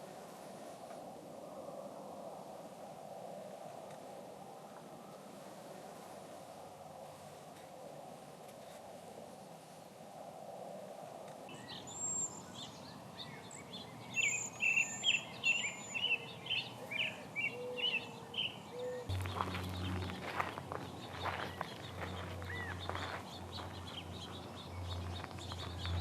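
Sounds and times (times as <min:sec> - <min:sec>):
songbird singing: 0:11.5 - 0:26.0.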